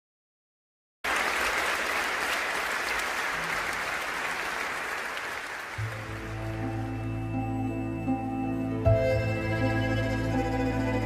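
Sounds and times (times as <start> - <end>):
applause: 1.0 - 7.1
soft music: 5.8 - 11.0.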